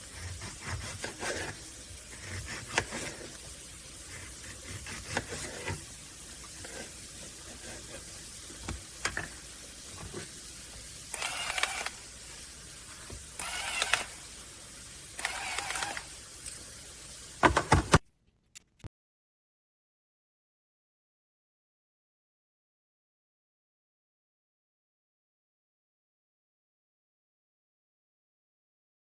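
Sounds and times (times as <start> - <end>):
harsh noise bursts: 11.1 - 12.0, 13.4 - 14.5, 15.2 - 16.2.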